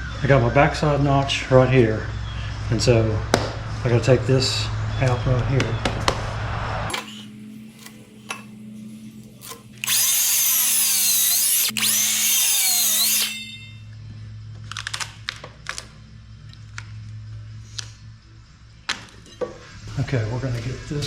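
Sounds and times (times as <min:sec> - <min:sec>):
power tool cutting wood: 0:09.4 - 0:13.7.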